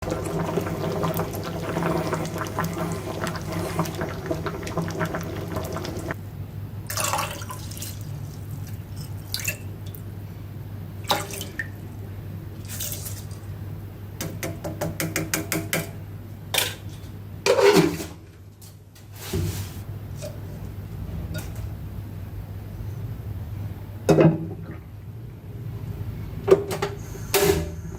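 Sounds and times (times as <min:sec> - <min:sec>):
running water: 0:00.0 - 0:06.2.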